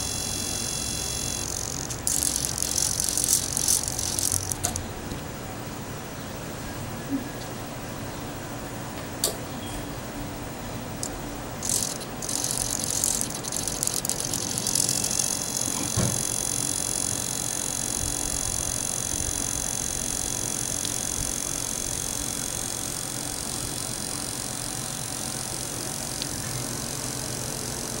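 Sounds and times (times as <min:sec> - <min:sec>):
model helicopter high-pitched buzzing: 0:00.0 - 0:04.9, 0:11.5 - 0:28.0
rattly bursts: 0:00.0 - 0:05.0, 0:11.6 - 0:28.0.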